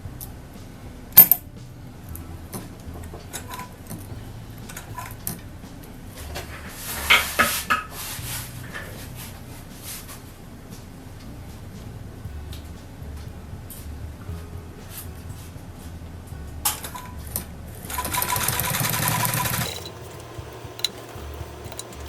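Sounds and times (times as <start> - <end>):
metallic clinks of tools: 1.2 - 1.4, 18.9 - 22.0.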